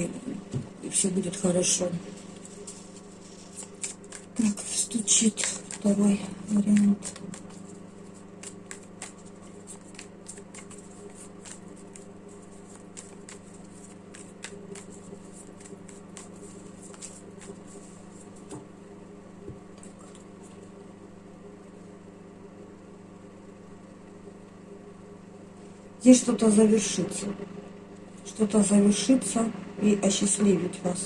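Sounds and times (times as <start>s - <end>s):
low electrical hum: 0.0s - 31.0s
cards being shuffled: 2.1s - 18.8s.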